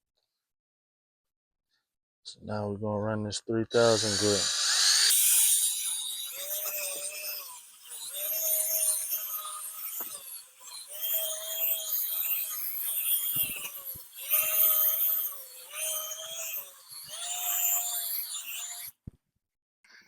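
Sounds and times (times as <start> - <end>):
power drill sanding plastic whine: 3.7 - 19.0.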